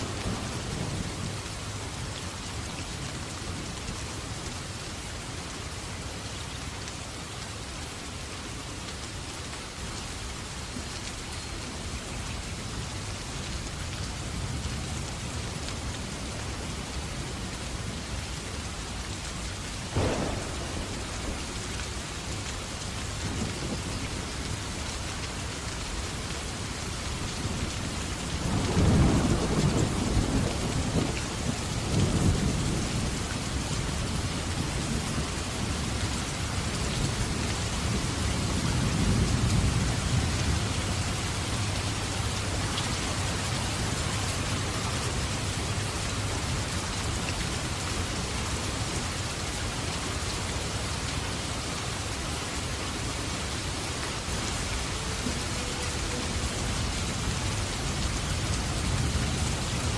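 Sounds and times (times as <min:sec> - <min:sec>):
steady rain: 0:00.0 - 0:59.9
sharp thunder crack: 0:19.9 - 0:22.3
low rolling thunder: 0:19.9 - 0:24.6, 0:27.4 - 0:36.0.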